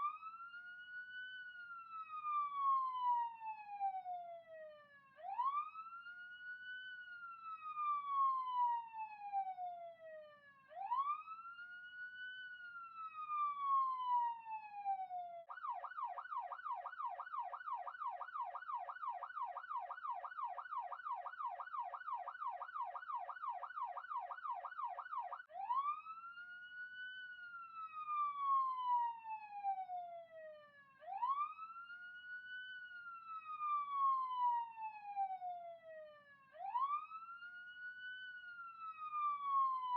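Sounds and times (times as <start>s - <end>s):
police siren wailing and yelping: 12.8s - 26.4s, 31.1s - 31.8s, 36.6s - 39.9s.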